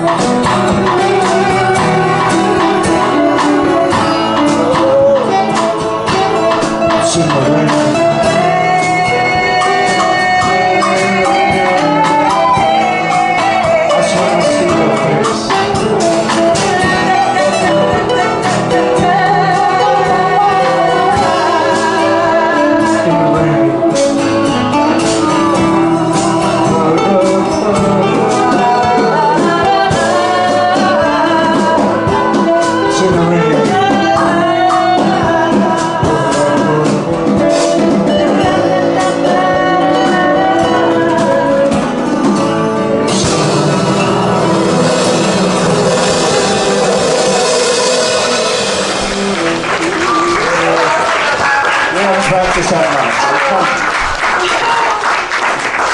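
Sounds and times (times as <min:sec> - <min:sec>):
live acoustic band with guitar: 0:00.0 - 0:55.9.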